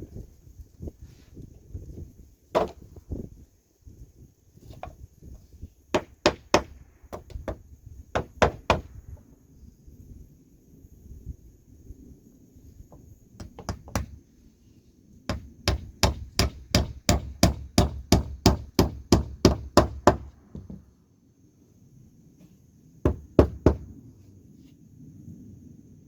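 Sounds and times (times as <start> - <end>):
hammer striking wood: 2.6 - 2.8, 6.0 - 7.6, 8.2 - 8.9, 13.4 - 14.2, 15.3 - 20.8, 23.1 - 23.9.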